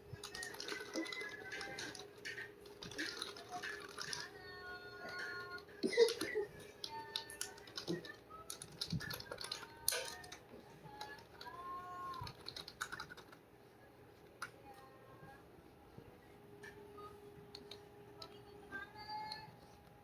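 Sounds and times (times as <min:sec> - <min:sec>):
keyboard keys clicking: 0:00.2 - 0:04.3, 0:05.1 - 0:10.4, 0:12.1 - 0:13.4.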